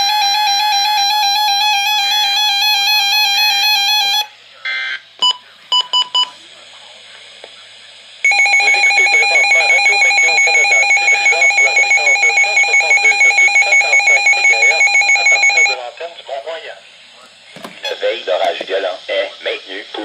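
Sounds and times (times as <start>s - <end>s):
pulsing alarm tone: 8.2s - 15.8s.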